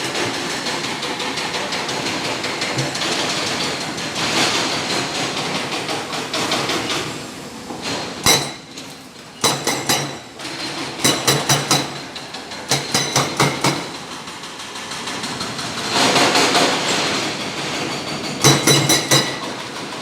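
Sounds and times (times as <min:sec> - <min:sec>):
excavator machine noise: 0:00.0 - 0:20.0
metallic clanks and knocks: 0:01.7 - 0:04.0, 0:07.8 - 0:14.1, 0:18.0 - 0:19.7.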